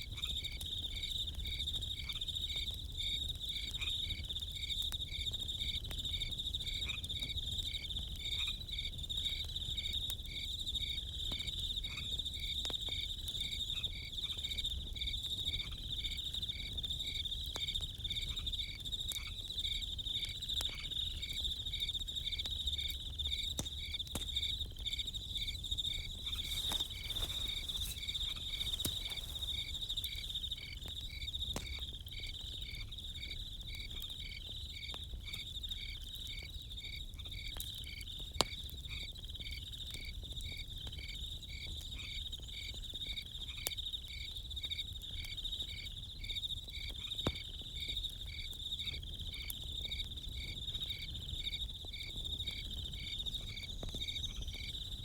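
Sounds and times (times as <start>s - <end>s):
crickets chirping: 0.0s - 55.0s
campfire crackling and popping: 19.0s - 36.5s.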